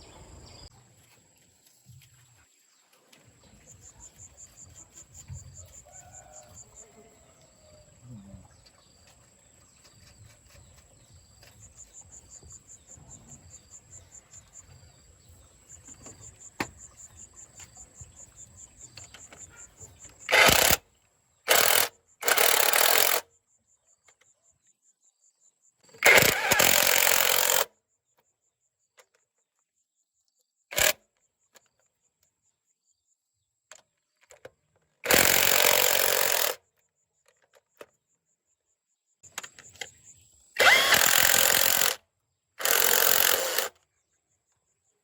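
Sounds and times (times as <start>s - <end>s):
power tool running in bursts: 20.3s - 20.8s, 21.5s - 23.2s, 26.0s - 27.6s, 35.1s - 36.6s, 40.6s - 42.0s, 42.6s - 43.7s.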